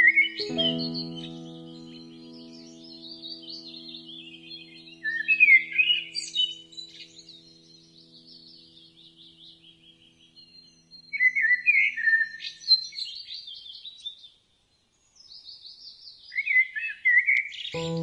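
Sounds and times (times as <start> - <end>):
faint low music chord: 0.0 - 12.2, 17.8 - 18.0
birds singing trills and whistles: 0.0 - 18.0.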